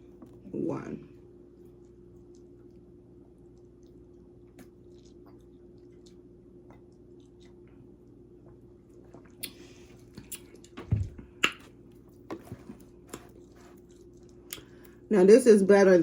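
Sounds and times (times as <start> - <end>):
person sipping and swallowing: 1.8 - 11.7
wet mouth clicks: 9.2 - 9.6, 11.4 - 11.7.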